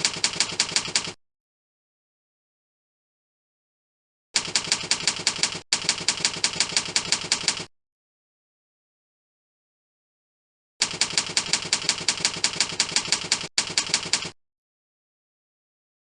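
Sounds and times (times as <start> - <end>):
rapid even clicking: 0.0 - 1.2, 4.4 - 7.7, 10.8 - 14.4.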